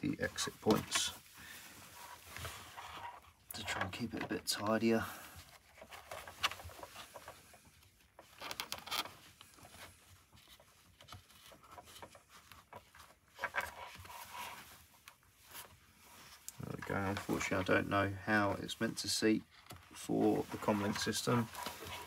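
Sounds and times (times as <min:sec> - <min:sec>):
soft rustling: 0:00.0 - 0:22.0.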